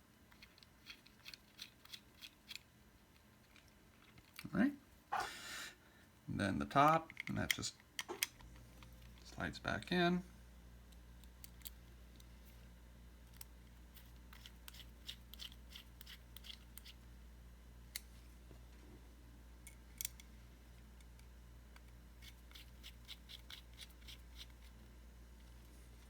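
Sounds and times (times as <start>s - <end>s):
low steady hum: 0.0s - 26.0s
small metal parts clicking: 0.3s - 4.5s.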